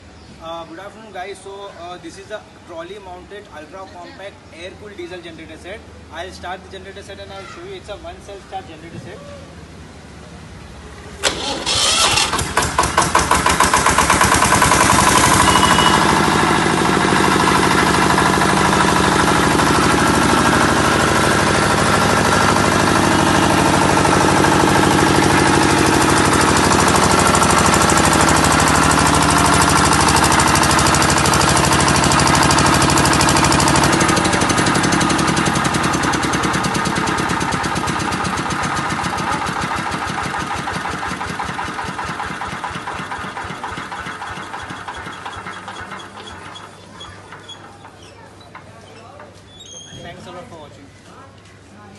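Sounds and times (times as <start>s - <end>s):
diesel generator running: 11.1s - 48.8s.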